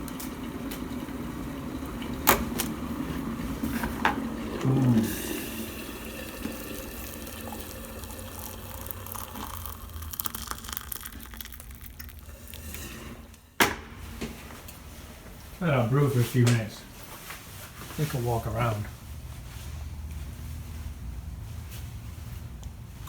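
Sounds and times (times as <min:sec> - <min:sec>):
water pouring into a mug: 0:00.0 - 0:13.4.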